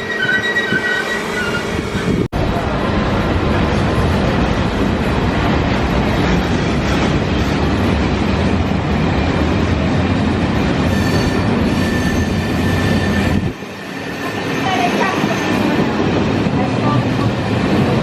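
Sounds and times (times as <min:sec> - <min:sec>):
wheel squeals: 0:00.0 - 0:02.1
train wheels rumbling on rails: 0:00.0 - 0:18.0.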